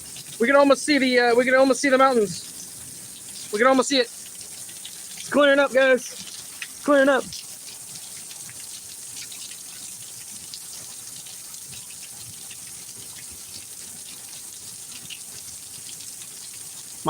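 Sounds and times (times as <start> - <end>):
heavy rain hissing: 0.0 - 7.4
water drips and splashes: 0.0 - 17.0.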